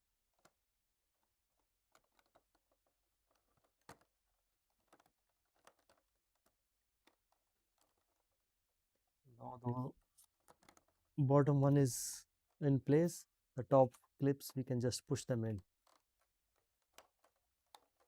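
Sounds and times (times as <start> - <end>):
small plastic clicks and knocks: 0.2 - 9.2, 10.1 - 11.2, 15.6 - 18.0.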